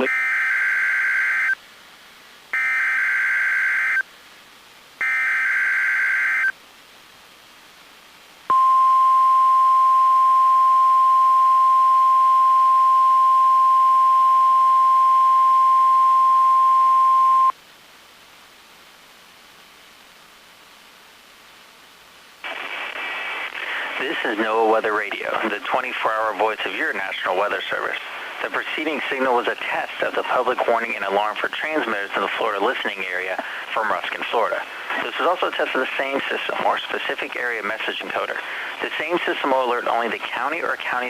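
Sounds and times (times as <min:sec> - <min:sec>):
steady warning alarm tone: 0:02.6 - 0:04.0, 0:05.0 - 0:06.5.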